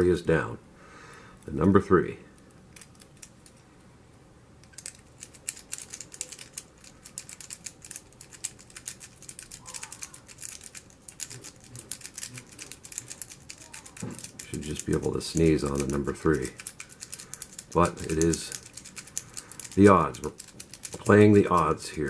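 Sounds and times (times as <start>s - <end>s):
lock pick clicking and scraping: 4.6s - 9.5s.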